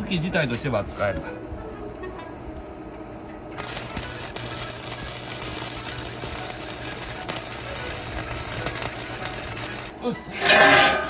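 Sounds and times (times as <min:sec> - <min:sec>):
welding arc crackling sizzle: 0:03.6 - 0:11.0.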